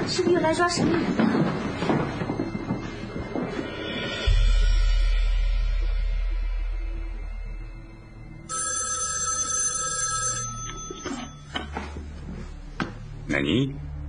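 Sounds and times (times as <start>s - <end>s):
telephone ringing: 8.5s - 11.7s.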